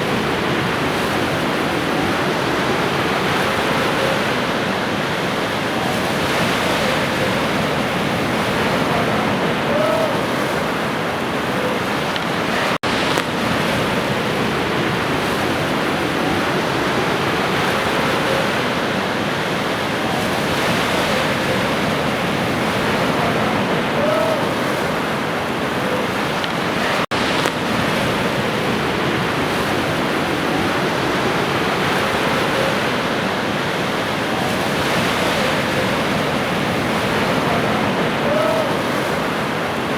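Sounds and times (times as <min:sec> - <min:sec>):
ocean waves washing on shore: 0:00.0 - 0:39.9.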